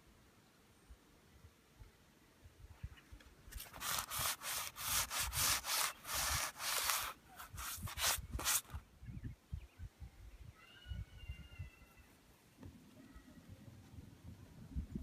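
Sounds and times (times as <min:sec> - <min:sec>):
hand rubbing a hard surface: 0:03.5 - 0:08.8.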